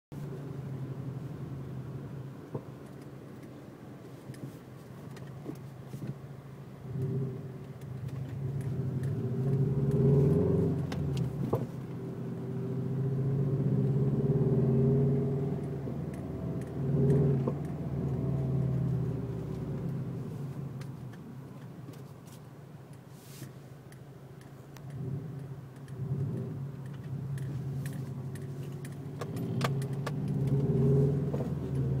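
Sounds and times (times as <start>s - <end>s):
car engine revving: 6.8s - 21.0s, 24.8s - 32.0s.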